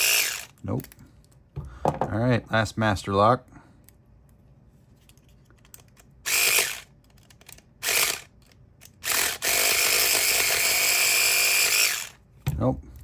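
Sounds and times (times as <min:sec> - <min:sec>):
electric saw buzzing on padlock: 0:00.0 - 0:00.5, 0:06.3 - 0:06.9, 0:07.8 - 0:12.2.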